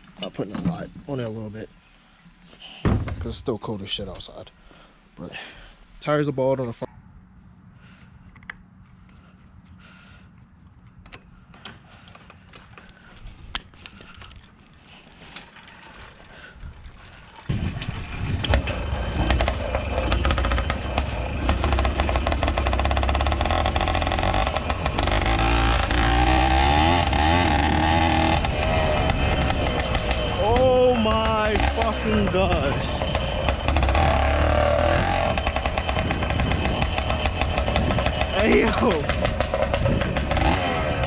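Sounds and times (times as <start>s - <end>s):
two-stroke engine revving: 17.6s - 41.0s.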